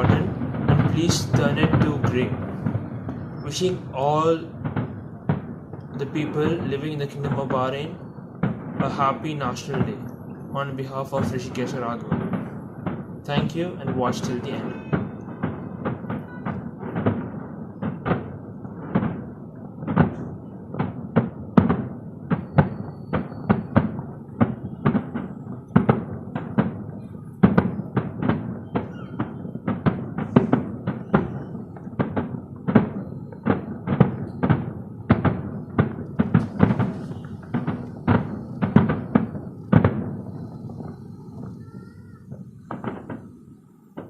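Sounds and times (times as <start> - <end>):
fireworks booming: 0.0 - 44.0.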